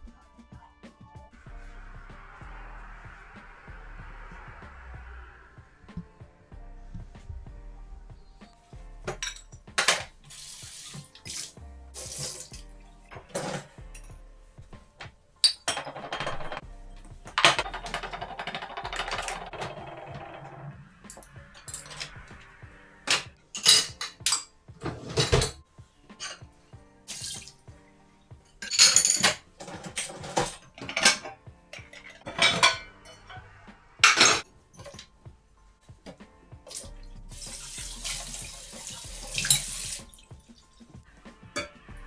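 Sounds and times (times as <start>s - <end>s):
dishes clattering in sink: 9.1s - 13.8s, 15.4s - 16.6s, 23.1s - 25.6s, 26.2s - 26.5s, 28.6s - 33.3s, 34.0s - 35.1s, 36.7s - 40.3s
tap running: 36.7s - 40.5s.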